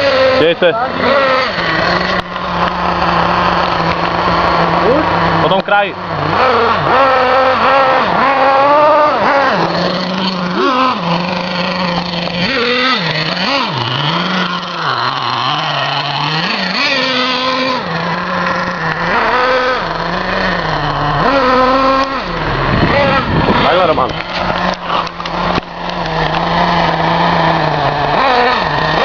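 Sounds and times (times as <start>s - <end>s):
moped engine revving: 0.0s - 29.0s.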